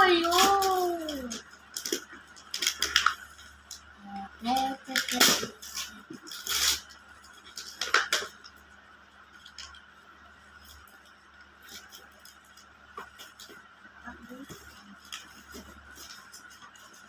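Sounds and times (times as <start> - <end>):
packaging rustling and ripping: 0.1 - 3.8, 4.5 - 8.4
faint clicks and crinkles: 0.2 - 17.0.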